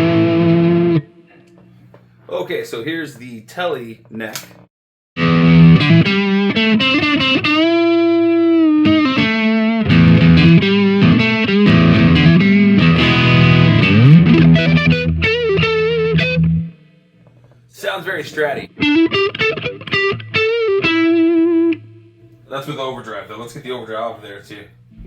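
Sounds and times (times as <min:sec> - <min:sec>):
overdriven electric guitar lead: 0:00.0 - 0:01.1, 0:05.2 - 0:16.8, 0:18.7 - 0:22.1.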